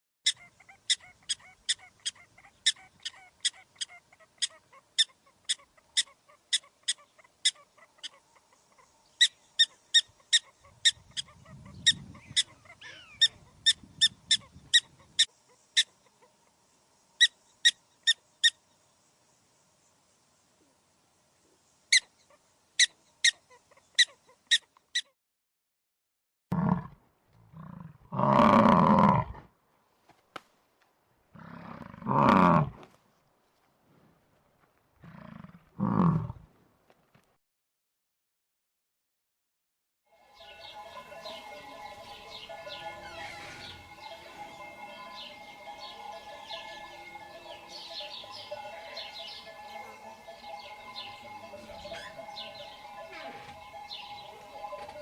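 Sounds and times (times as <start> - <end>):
animal high-pitched chirps: 0.2 - 16.2, 21.9 - 25.2, 51.8 - 54.3
loud low animal calls: 0.3 - 16.0, 31.4 - 32.9, 35.0 - 36.5.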